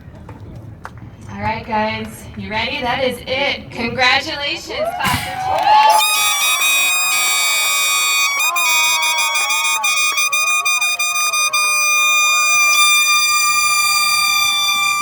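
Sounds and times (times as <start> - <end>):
crowd cheering and screaming: 4.9 - 15.0
air horn blast: 5.8 - 15.0.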